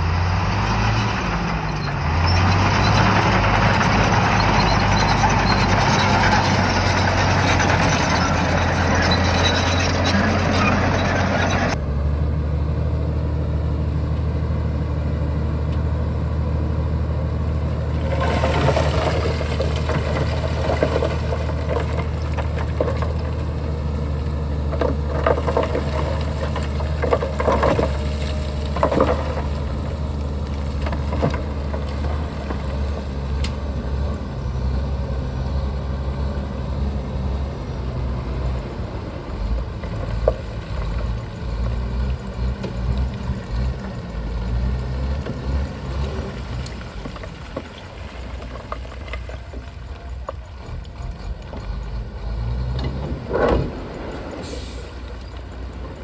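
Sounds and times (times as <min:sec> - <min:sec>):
bulldozer diesel engine running: 0:00.0 - 0:56.0.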